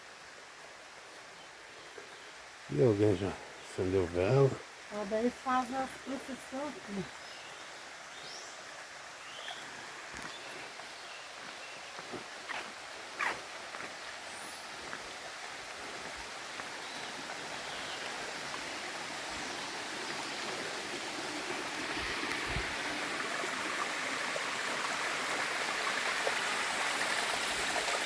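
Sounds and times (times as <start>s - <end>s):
waterfall rushing: 13.8s - 28.0s.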